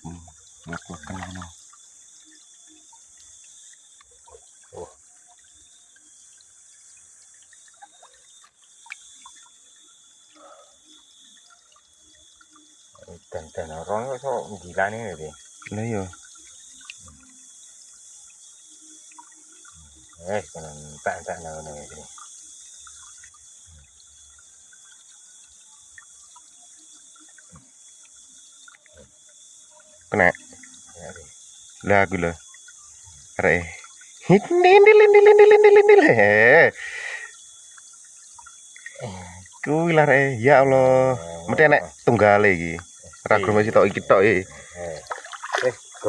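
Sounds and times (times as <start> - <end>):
small splashes: 0.0 - 9.9, 33.4 - 46.0
small water splashes: 0.0 - 10.3, 11.0 - 46.0
river water trickling: 0.0 - 46.0.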